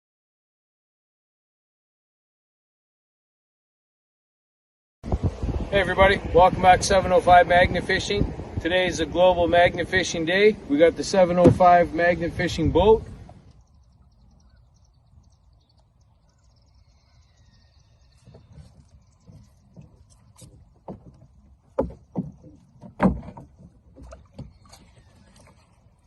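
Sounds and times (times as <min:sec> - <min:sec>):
gear knocks and clunks: 0:18.3 - 0:24.8.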